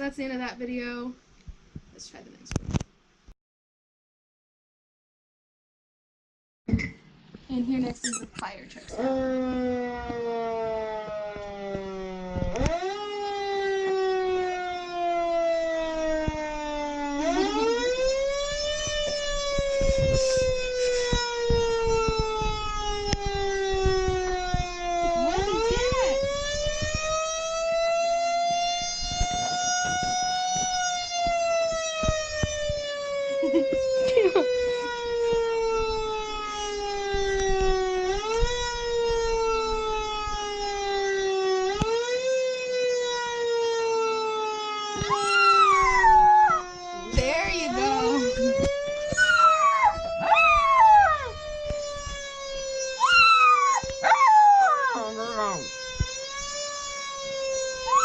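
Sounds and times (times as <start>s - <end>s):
fire truck siren wailing: 8.9s - 58.0s
dog howling: 25.2s - 26.4s, 45.0s - 46.7s, 49.1s - 51.4s, 53.0s - 55.7s.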